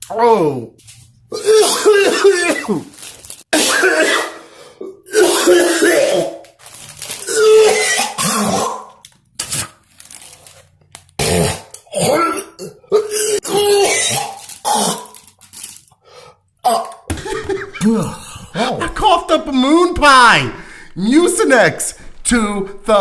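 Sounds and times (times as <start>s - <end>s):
man clearing throat: 17.1s - 23.0s
man coughing: 17.1s - 23.0s.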